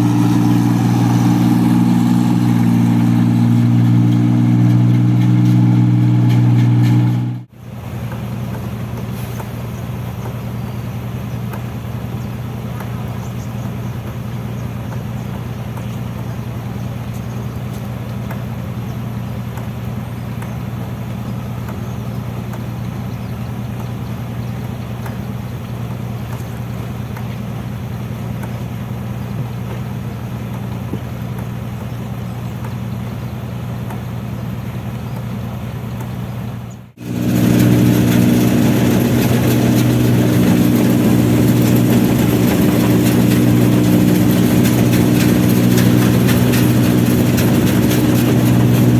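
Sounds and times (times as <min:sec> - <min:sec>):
harvester engine droning: 0:00.0 - 0:07.5, 0:34.5 - 0:48.9.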